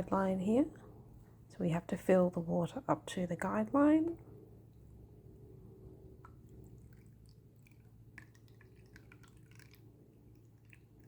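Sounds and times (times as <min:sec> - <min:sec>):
low steady hum: 0:00.0 - 0:11.0
water dripping and trickling: 0:06.2 - 0:11.0.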